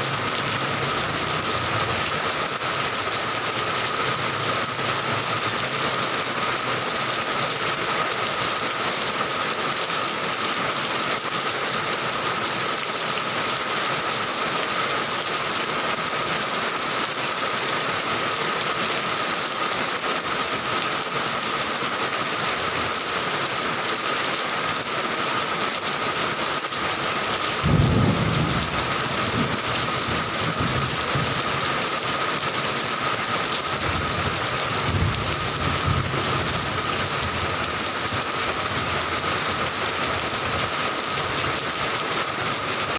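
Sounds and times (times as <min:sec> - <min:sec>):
heavy rain falling: 0:00.0 - 0:42.9
thunder rolling: 0:27.6 - 0:31.6, 0:33.8 - 0:37.6.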